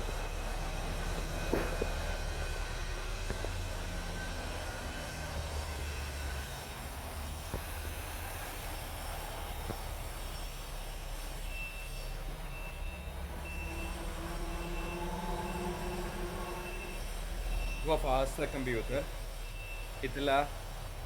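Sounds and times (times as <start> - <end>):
car engine idling: 6.6 - 21.0.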